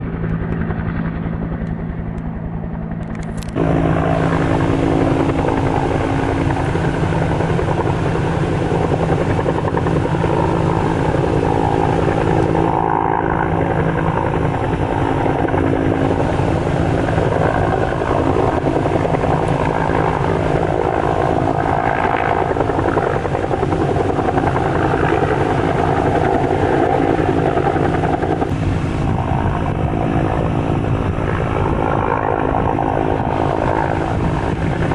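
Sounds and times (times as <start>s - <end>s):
helicopter rotor and engine drone: 0.0s - 34.9s.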